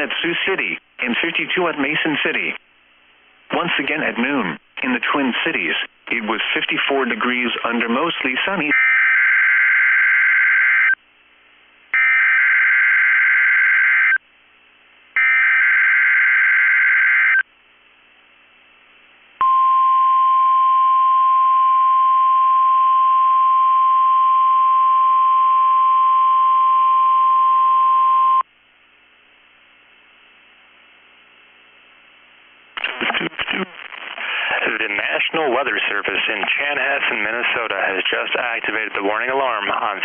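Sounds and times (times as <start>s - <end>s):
steady alarm tone: 12.0s - 14.2s.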